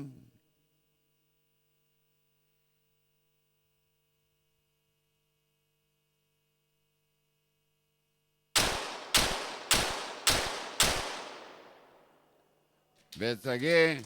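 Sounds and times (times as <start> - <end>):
pistol shots with echo: 8.6 - 12.3.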